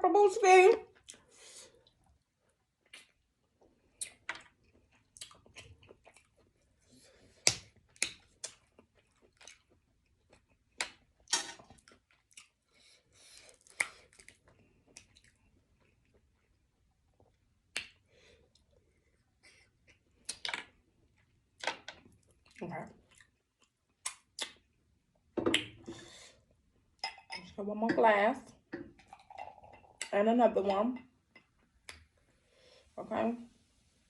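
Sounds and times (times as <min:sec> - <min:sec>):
chewing: 0:01.0 - 0:24.8
lip smacks: 0:02.8 - 0:03.2, 0:13.5 - 0:15.4, 0:23.1 - 0:24.8.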